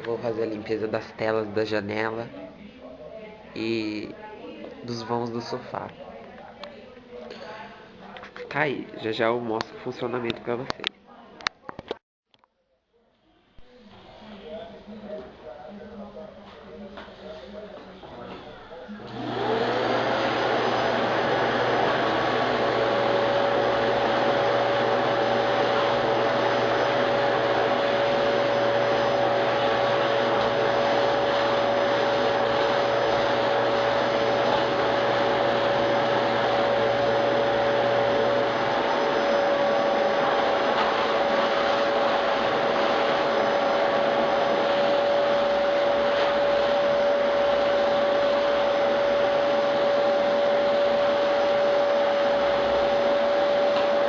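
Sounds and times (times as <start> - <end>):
vacuum cleaner running: 17.5 - 54.0.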